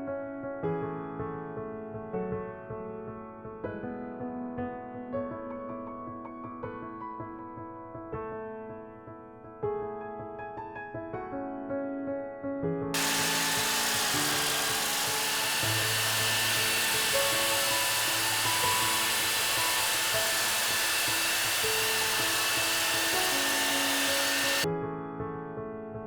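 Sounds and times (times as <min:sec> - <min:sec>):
soft piano music: 0:00.0 - 0:12.9
power tool whining: 0:13.0 - 0:24.7.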